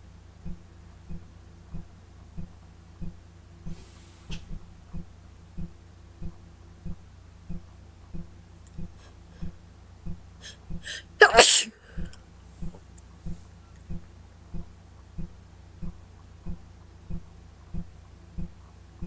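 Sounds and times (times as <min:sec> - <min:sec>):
woman sneezing: 0:10.4 - 0:12.1
woman hitching breaths: 0:10.4 - 0:12.2.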